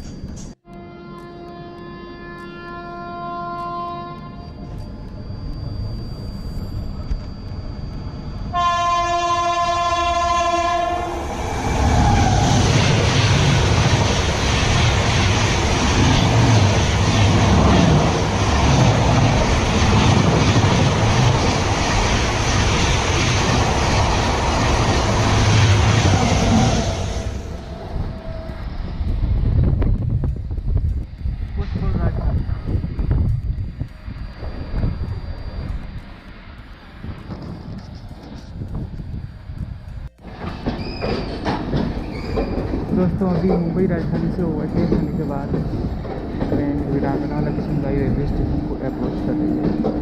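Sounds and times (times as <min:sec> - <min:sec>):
train horn blast: 0:00.6 - 0:04.6, 0:08.5 - 0:11.3
train rushing past: 0:04.2 - 0:50.0
wheels clattering over rail joints: 0:40.2 - 0:47.0.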